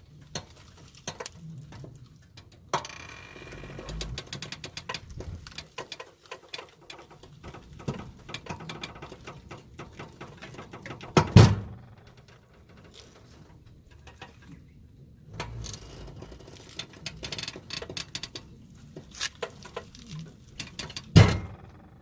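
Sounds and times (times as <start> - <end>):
light clicks and knocks: 3.6 - 14.6, 15.4 - 22.0.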